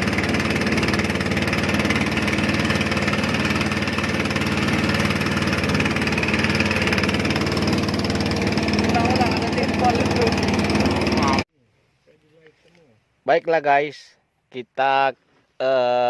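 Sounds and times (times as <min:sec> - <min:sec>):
boat engine running steadily: 0:00.0 - 0:11.5.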